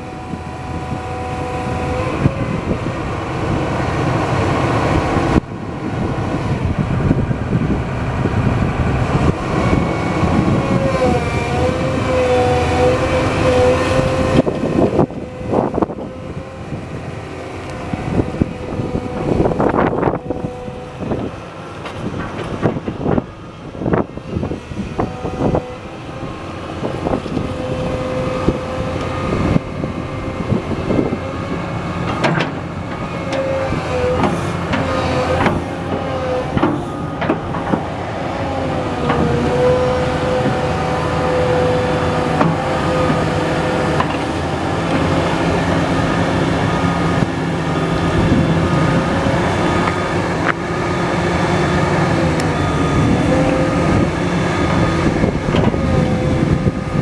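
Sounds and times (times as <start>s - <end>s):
excavator engine whining: 0.0s - 57.0s
metal clanks and knocks: 32.0s - 32.7s, 34.1s - 37.9s.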